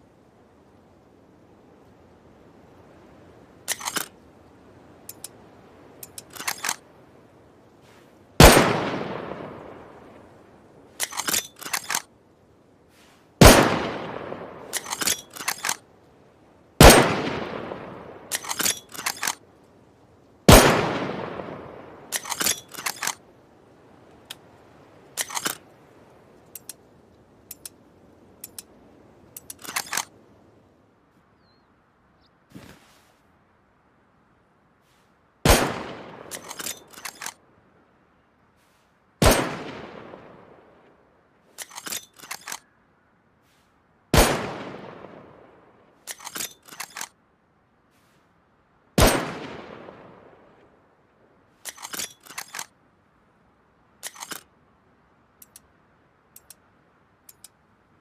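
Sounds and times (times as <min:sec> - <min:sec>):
metallic bolt clicks: 0:03.7 - 0:04.1, 0:11.0 - 0:12.1, 0:18.3 - 0:19.4, 0:22.1 - 0:23.2, 0:25.2 - 0:25.6, 0:41.6 - 0:42.7, 0:46.1 - 0:47.2, 0:51.6 - 0:52.7, 0:54.0 - 0:54.5, 0:55.4 - 0:55.7, 0:56.3 - 0:57.6
rifle shots echoing: 0:08.4 - 0:10.1, 0:13.4 - 0:15.8, 0:16.8 - 0:19.4, 0:20.5 - 0:23.2, 0:35.4 - 0:37.4, 0:39.2 - 0:40.7, 0:44.1 - 0:45.6, 0:49.0 - 0:50.6.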